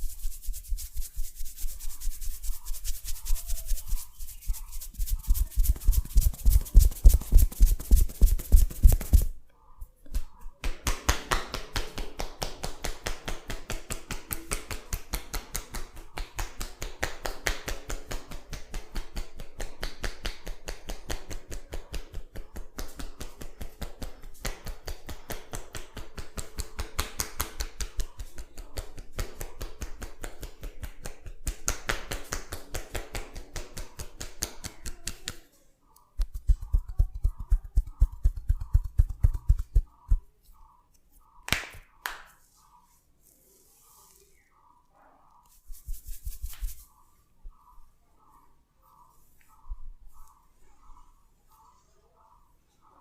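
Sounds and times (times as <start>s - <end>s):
hands tapping on a head: 2.7s - 9.3s, 10.1s - 35.4s, 36.2s - 40.2s.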